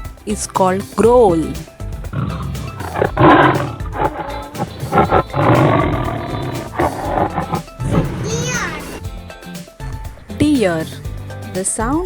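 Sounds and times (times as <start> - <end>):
background music: 0.0 - 12.0
tiger growling: 0.8 - 9.1.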